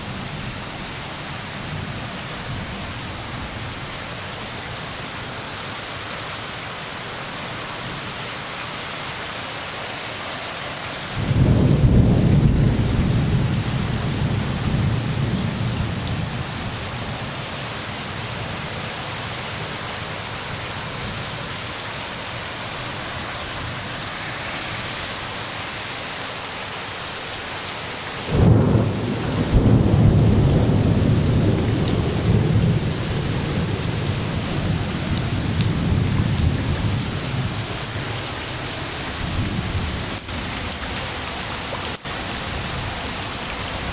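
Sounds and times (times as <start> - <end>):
heavy rain: 0.0 - 43.9
thunder rumbling: 11.2 - 16.5, 28.3 - 37.6.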